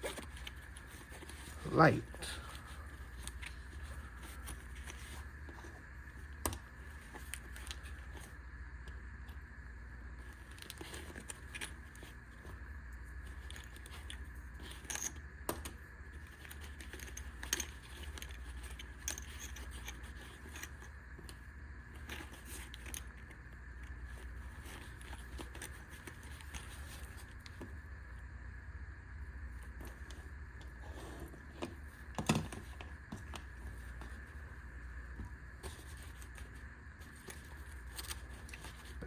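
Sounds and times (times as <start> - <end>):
steady low hum: 0.0 - 39.0
small items clicking and rattling: 13.2 - 20.9.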